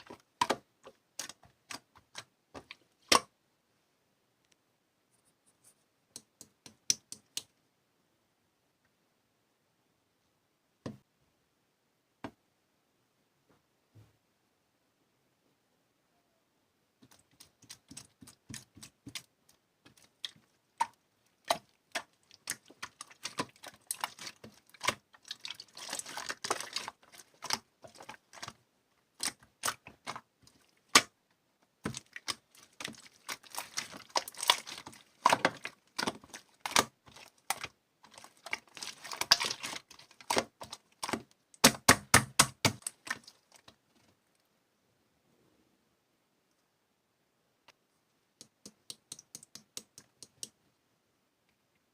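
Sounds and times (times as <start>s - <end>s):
sharp clicks and taps: 6.1s - 7.6s, 48.4s - 50.6s.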